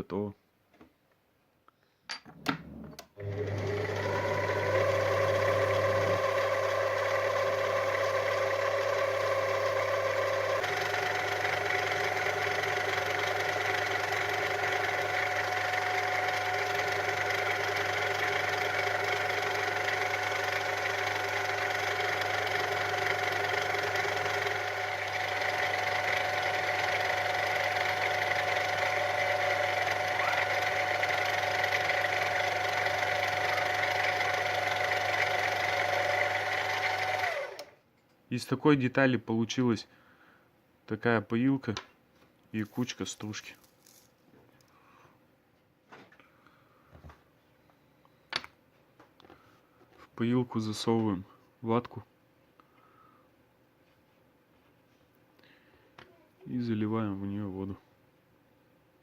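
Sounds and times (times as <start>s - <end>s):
lathe humming and whining: 3.2s - 37.7s.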